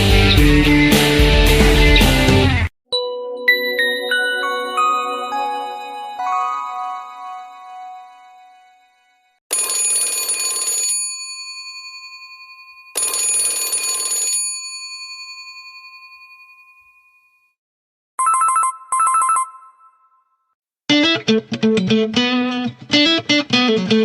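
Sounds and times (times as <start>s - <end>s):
metallic bell ringtone: 3.0s - 7.9s, 11.1s - 13.0s, 14.5s - 17.4s
trilling phone ring: 9.5s - 17.2s, 18.2s - 20.3s.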